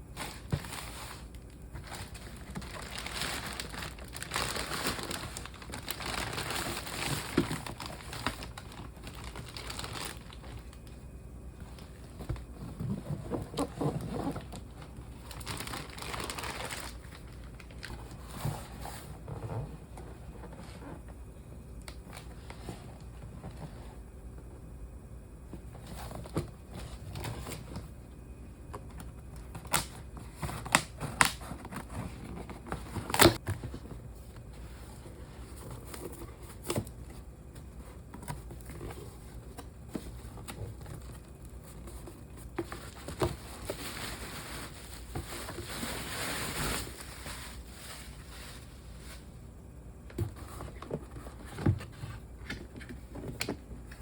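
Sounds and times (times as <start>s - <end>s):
crinkly rustling: 0.1s - 11.0s, 11.6s - 21.0s, 28.8s - 49.5s.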